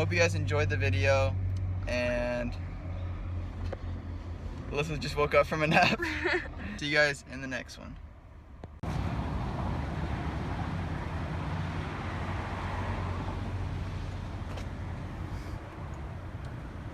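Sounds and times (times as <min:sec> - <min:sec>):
low engine hum: 0:00.0 - 0:16.9
road and wind noise: 0:00.0 - 0:16.9.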